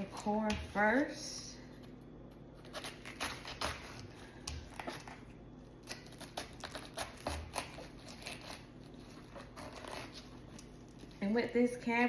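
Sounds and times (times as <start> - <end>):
knife crunching through cabbage: 2.4 - 11.3.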